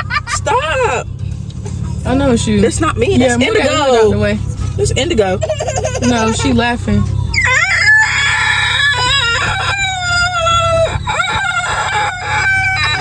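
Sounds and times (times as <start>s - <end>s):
man imitating rooster crowing: 7.4s - 13.0s.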